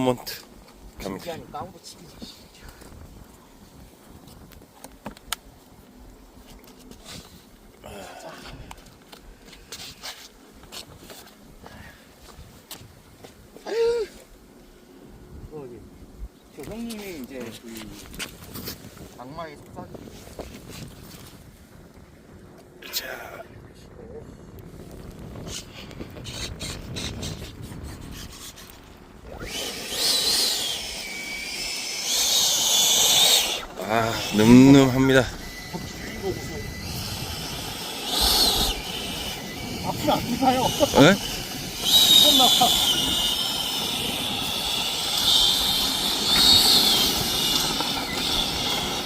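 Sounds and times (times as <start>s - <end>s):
electric jet fan whine: 0.0s - 49.0s
rubbing and buffeting noise: 15.2s - 22.8s, 23.6s - 49.0s.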